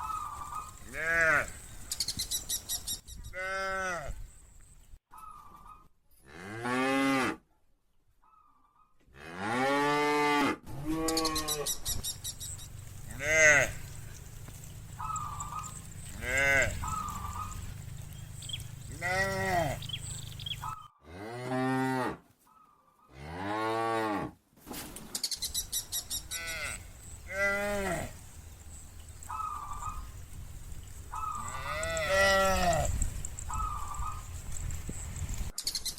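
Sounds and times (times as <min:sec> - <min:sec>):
cows mooing: 0:00.3 - 0:01.7, 0:12.6 - 0:22.2, 0:26.2 - 0:30.2, 0:31.2 - 0:34.3.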